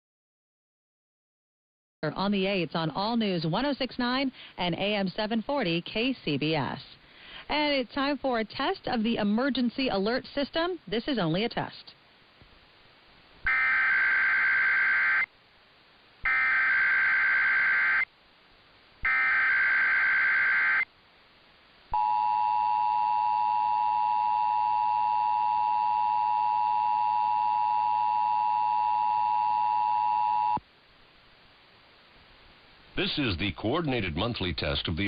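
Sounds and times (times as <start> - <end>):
data bursts over radio: 13.5 - 15.3, 16.3 - 18.1, 19.0 - 20.9.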